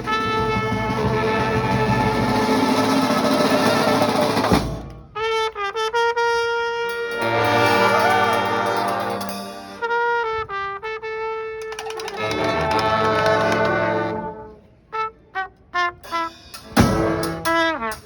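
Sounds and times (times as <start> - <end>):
brass band playing: 0.0 - 18.0
horn playing short notes: 5.2 - 18.0.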